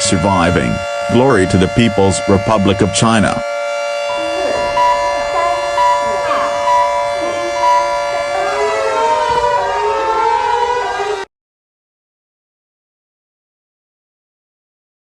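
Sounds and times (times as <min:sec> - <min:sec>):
alert siren: 0:00.0 - 0:11.3.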